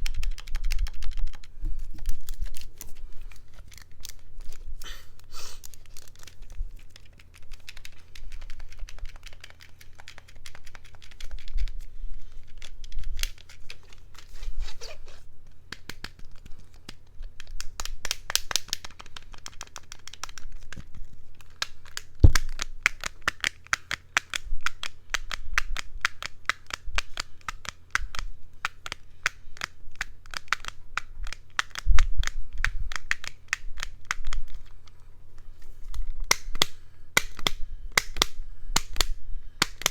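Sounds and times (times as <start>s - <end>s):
crinkling of handled object: 0.0s - 25.1s.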